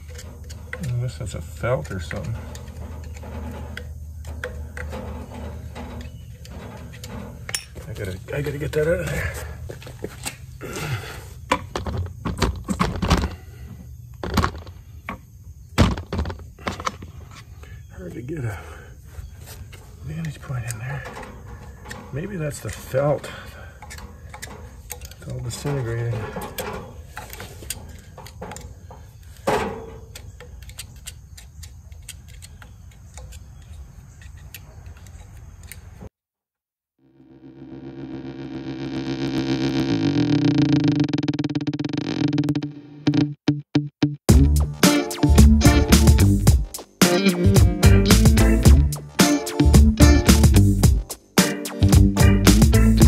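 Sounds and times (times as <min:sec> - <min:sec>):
hand tool clicking and scraping: 0:00.0 - 0:09.2, 0:19.5 - 0:29.4, 0:30.1 - 0:35.9.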